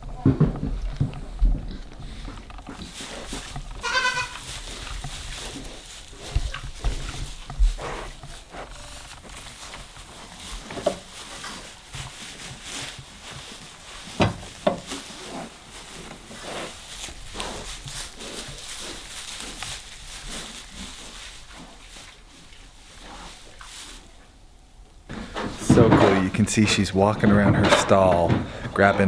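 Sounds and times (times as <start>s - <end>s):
pig rustling straw: 2.1s - 29.0s
sharp loud knocks: 25.1s - 29.0s.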